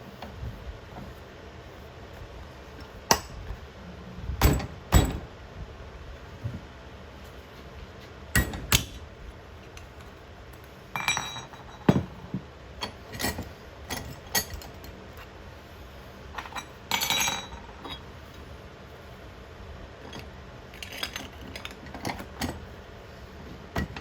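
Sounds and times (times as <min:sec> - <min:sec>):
hard pieces clinking and knocking: 0:20.1 - 0:22.5.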